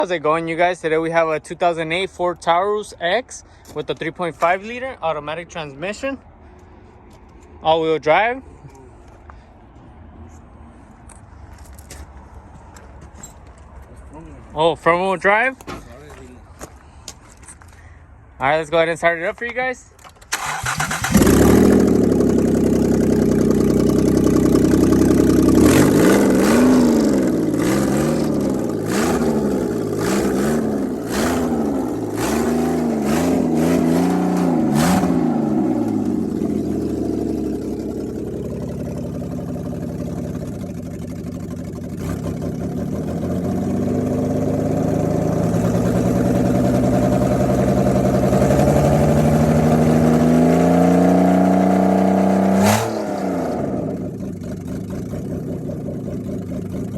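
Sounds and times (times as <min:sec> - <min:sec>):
car engine revving: 0:20.3 - 0:56.9
engine knocking: 0:54.2 - 0:56.9.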